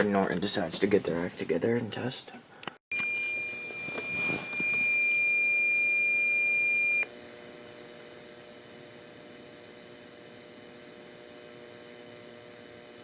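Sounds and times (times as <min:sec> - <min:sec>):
high alarm beep: 0:02.9 - 0:07.0.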